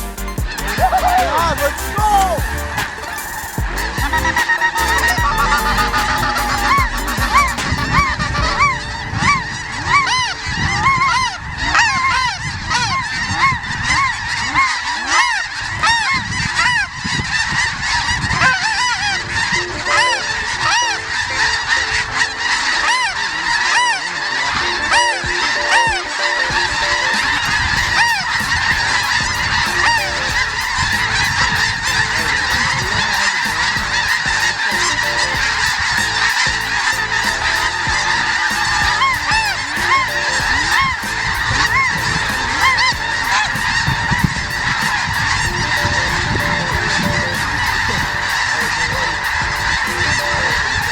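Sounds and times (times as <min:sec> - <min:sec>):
geese honking: 0:00.0 - 0:50.9.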